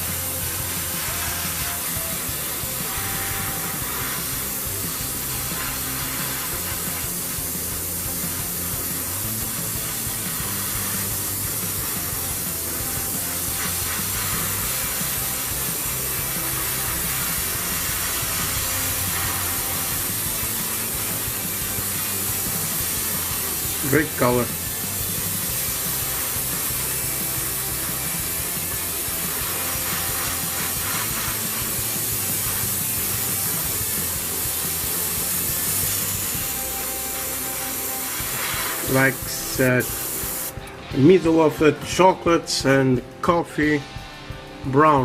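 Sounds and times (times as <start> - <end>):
airbrush spraying hiss: 0.0 - 40.6.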